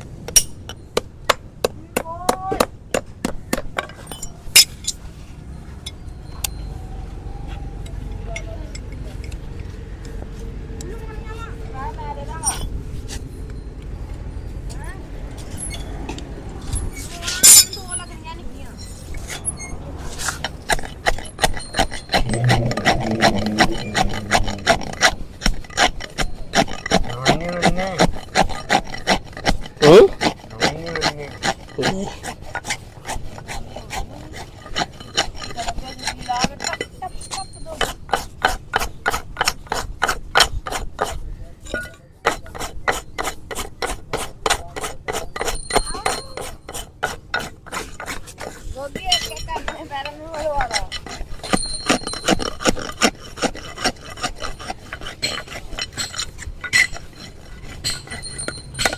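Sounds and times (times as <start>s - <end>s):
rasp filing a hoof: 16.7s - 58.9s.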